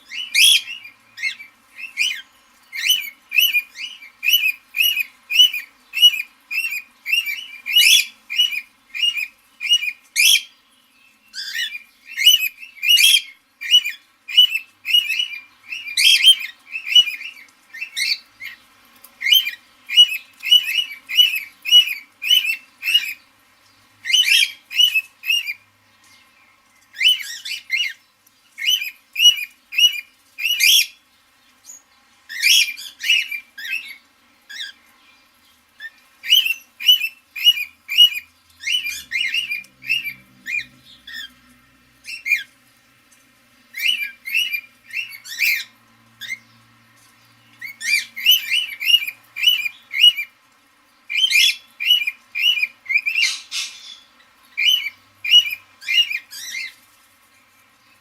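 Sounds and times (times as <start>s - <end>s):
parrot chirping: 0.0s - 10.6s, 11.3s - 18.6s, 19.2s - 23.2s, 24.0s - 25.7s, 26.8s - 31.0s, 31.7s - 34.8s, 35.8s - 42.6s, 43.7s - 46.8s, 47.5s - 50.4s, 51.1s - 56.8s.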